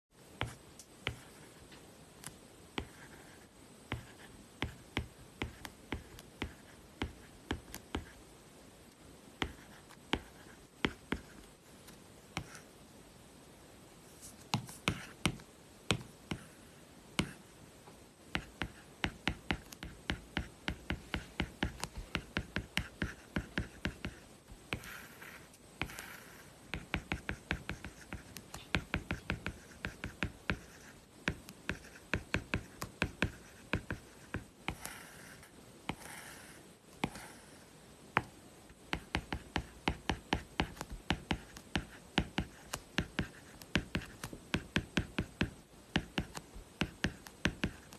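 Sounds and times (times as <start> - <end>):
stylus tapping on screen: 14.3 - 16.5, 38.1 - 47.9
scratchy pen strokes: 18.3 - 37.7, 38.9 - 47.9.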